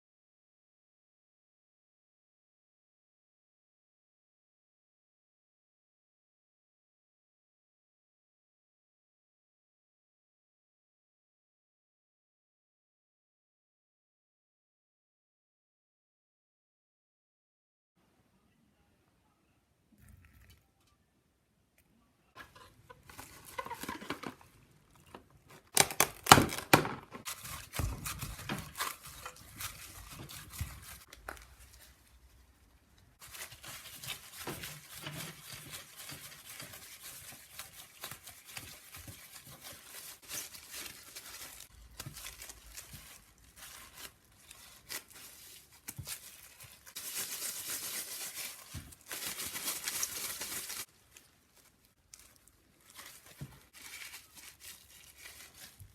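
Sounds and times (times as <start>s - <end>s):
packaging rustling and crinkling: 22.4s - 55.9s.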